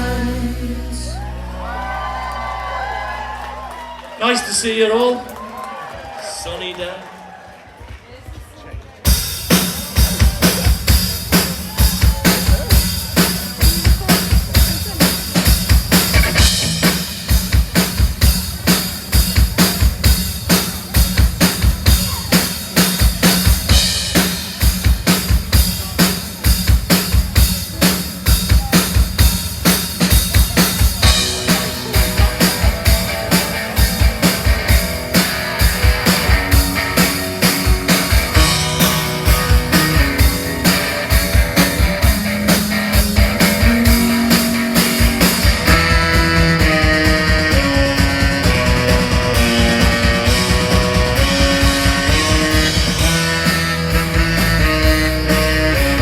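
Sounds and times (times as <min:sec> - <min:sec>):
drum kit beat: 0:00.0 - 0:00.9, 0:09.0 - 0:56.0
bass: 0:00.0 - 0:05.3, 0:09.1 - 0:56.0
electric guitar: 0:30.8 - 0:56.0.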